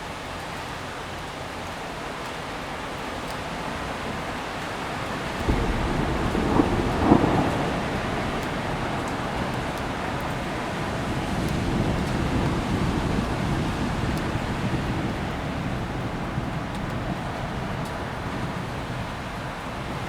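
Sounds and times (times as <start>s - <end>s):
steady rain: 0.0s - 20.0s
rolling thunder: 5.3s - 20.0s.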